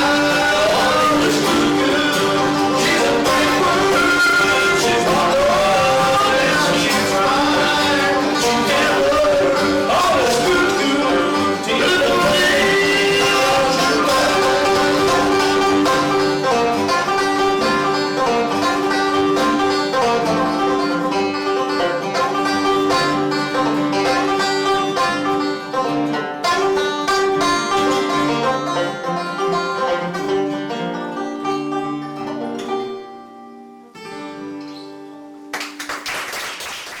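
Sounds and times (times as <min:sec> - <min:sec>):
banjo and guitar playing: 0:00.0 - 0:35.8.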